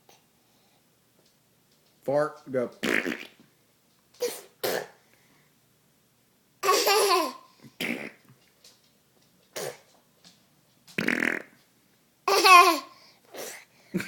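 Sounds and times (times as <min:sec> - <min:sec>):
baby laughing: 0:06.6 - 0:07.5, 0:12.3 - 0:13.0.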